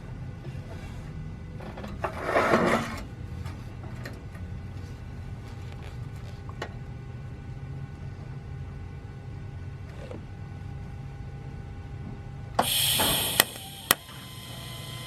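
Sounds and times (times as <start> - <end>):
steady low hum: 0.0 - 15.0
scraping rub: 2.0 - 3.7.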